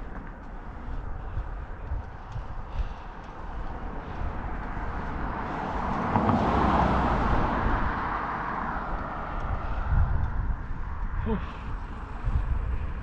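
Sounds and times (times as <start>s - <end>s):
steady low rumble: 0.0s - 13.0s
car passing by: 3.7s - 10.7s.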